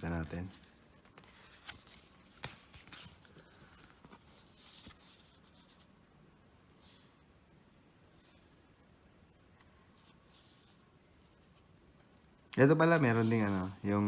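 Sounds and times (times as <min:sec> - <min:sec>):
pages rustling: 0:00.0 - 0:05.9, 0:12.6 - 0:14.0.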